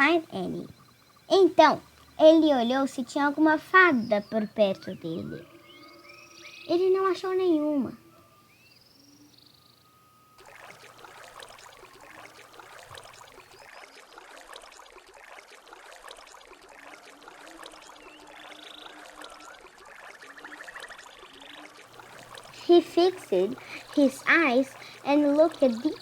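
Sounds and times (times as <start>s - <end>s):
water trickling and splashing: 0.0s - 8.0s, 10.4s - 26.0s
bird chirps and trills: 0.0s - 13.8s, 20.4s - 26.0s.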